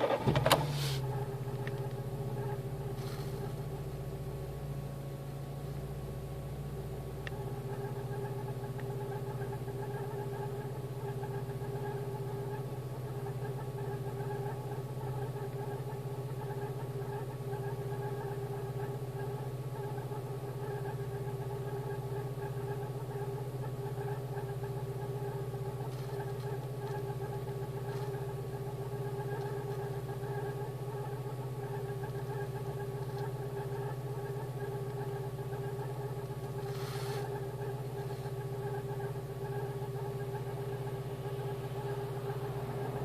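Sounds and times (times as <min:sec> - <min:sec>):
car engine idling: 0:00.0 - 0:43.0
short hiss: 0:00.6 - 0:01.0, 0:36.7 - 0:37.2.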